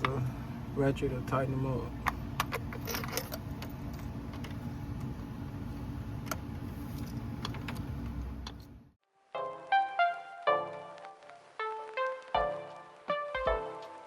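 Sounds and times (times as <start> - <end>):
steady low hum: 0.0 - 9.0.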